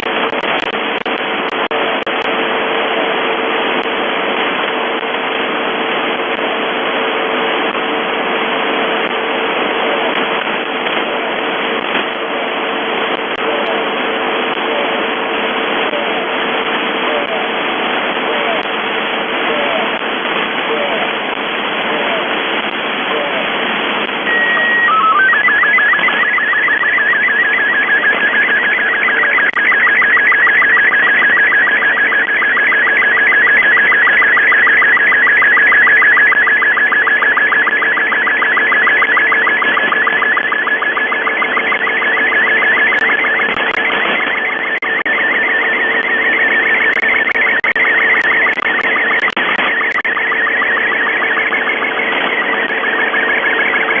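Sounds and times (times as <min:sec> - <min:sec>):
radio static hiss: 0:00.0 - 0:54.0
pulsing electronic warble: 0:24.3 - 0:54.0.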